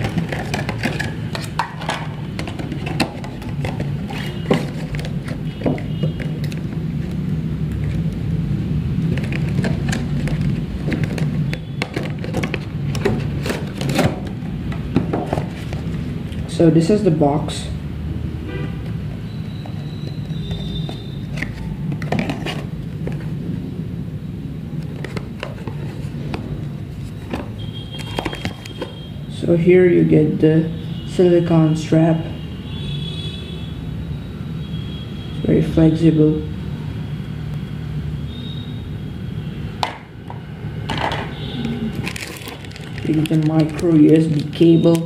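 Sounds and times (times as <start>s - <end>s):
cardboard packaging rustling and clicking: 0.0s - 8.2s, 9.0s - 16.2s, 19.6s - 23.4s, 24.8s - 29.0s, 40.9s - 45.0s
box knocks and rustles: 9.2s - 15.9s.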